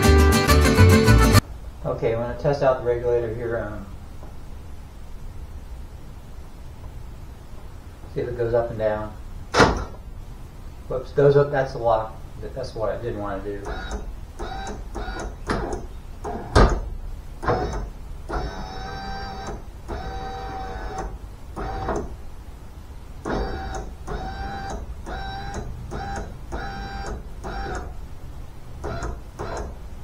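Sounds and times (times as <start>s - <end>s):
power window motor whine: 13.7s - 16.5s, 17.4s - 22.2s, 23.2s - 28.0s, 28.8s - 29.8s.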